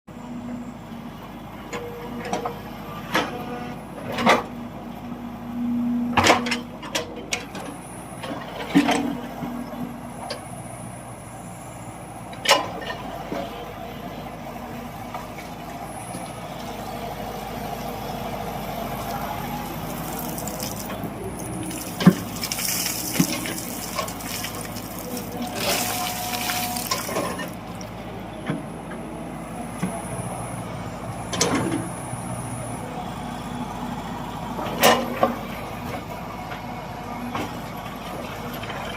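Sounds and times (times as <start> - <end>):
heavy machine engine hum: 0.1 - 38.9.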